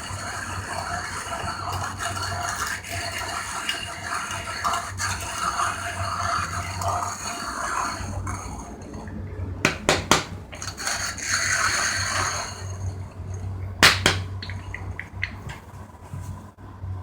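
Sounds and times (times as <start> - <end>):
hand-cranked coffee grinder grinding: 0.0 - 9.0, 9.8 - 13.5
sharp clicks and knocks: 9.7 - 10.8, 13.8 - 15.7.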